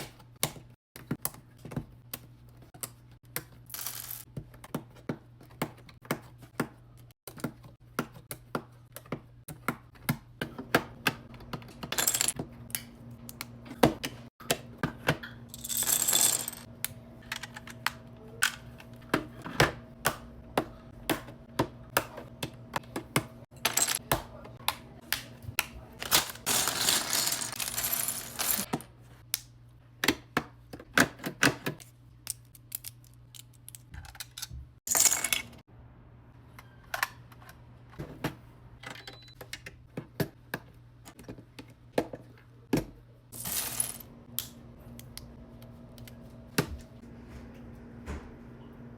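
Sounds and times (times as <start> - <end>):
loose pieces rattling: 26.0 - 28.7.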